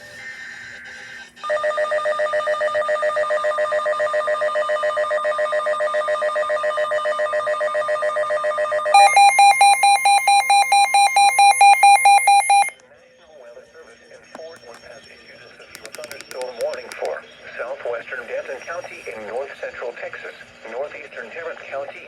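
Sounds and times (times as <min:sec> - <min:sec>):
high electronic beeping: 0:09.0 - 0:12.7.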